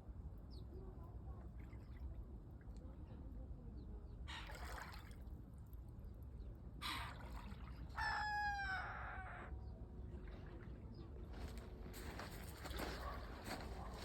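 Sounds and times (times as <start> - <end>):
rooster crowing: 8.0 - 9.5.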